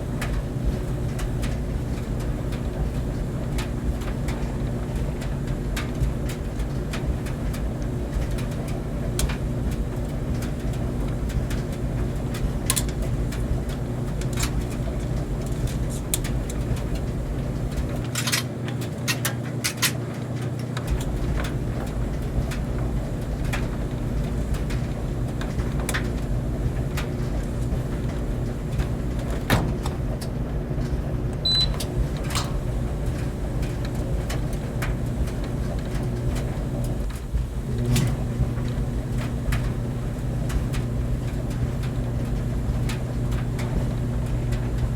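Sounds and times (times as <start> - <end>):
clothes dryer running: 0.0 - 44.9.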